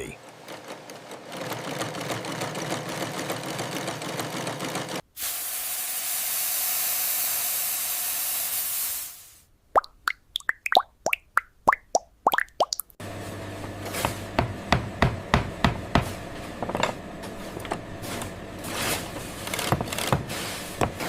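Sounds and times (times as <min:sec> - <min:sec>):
liquid plops: 0:09.7 - 0:13.0
steady machine hum: 0:13.0 - 0:21.0.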